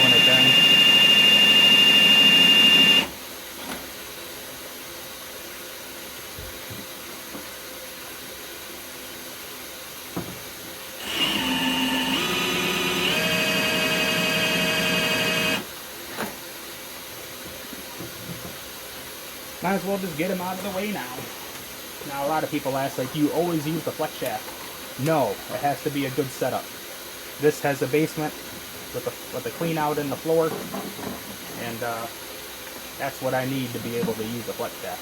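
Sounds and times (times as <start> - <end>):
power drill whining: 0.0 - 3.1, 11.0 - 15.7.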